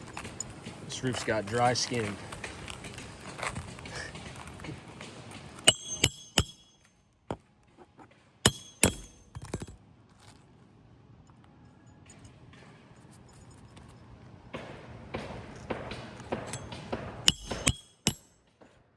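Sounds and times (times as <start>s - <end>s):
metallic hand tool clinks: 5.6s - 6.9s, 8.5s - 9.7s.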